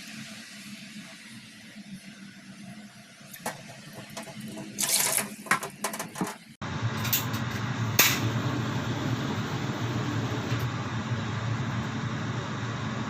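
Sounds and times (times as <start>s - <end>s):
water splashing into a pot: 3.3s - 5.9s
steady low hum: 6.6s - 13.0s.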